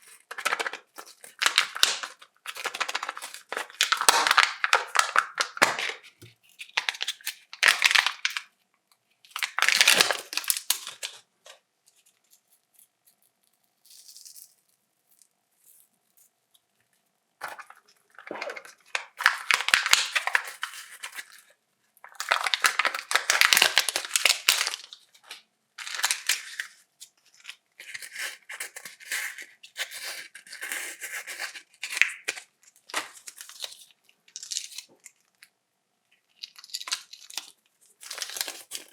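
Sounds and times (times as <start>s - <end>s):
wrappers crinkling and tearing: 0.0s - 8.5s, 9.3s - 11.2s, 17.4s - 26.8s, 29.9s - 35.2s, 36.3s - 38.9s.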